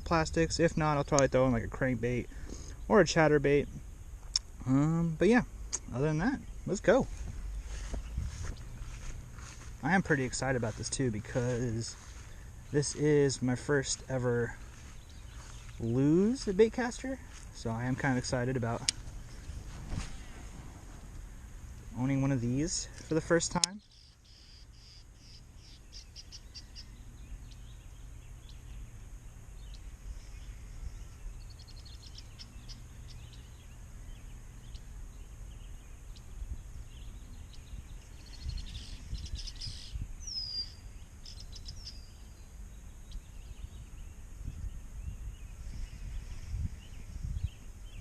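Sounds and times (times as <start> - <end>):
birds chirping: 0.0 - 48.0
steady low rumble: 0.0 - 48.0
bird trill: 23.8 - 48.0.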